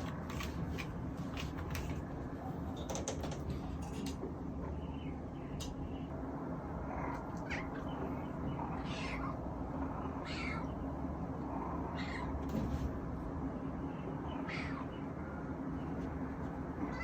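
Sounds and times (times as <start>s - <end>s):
steady low hum: 0.0s - 17.0s
kitten meowing: 8.8s - 9.4s, 10.2s - 10.7s.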